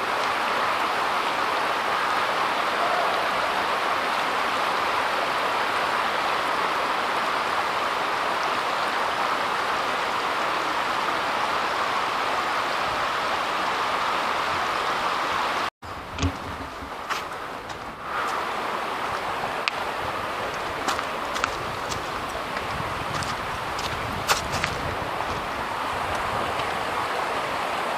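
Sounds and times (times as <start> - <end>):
flowing stream water: 0.0 - 27.9
low thump: 16.1 - 17.1.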